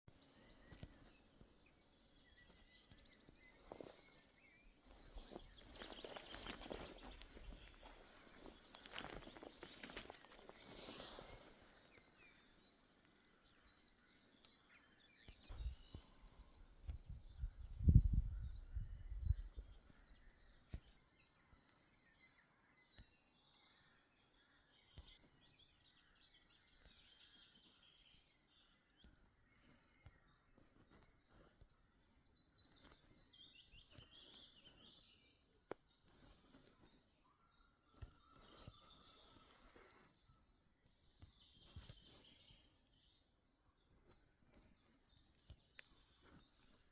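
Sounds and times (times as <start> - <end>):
small birds chirping and singing: 0.0 - 46.9
footsteps: 4.9 - 11.3.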